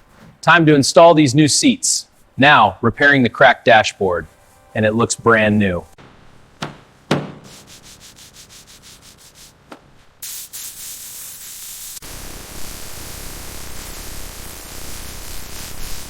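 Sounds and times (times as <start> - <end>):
steady hiss: 0.0 - 6.5, 7.3 - 16.0
hand sanding strokes: 7.4 - 9.6.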